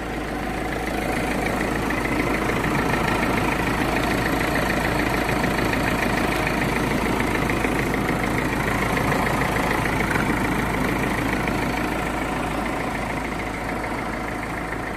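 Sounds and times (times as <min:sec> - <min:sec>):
diesel engine idling: 0:00.0 - 0:14.9.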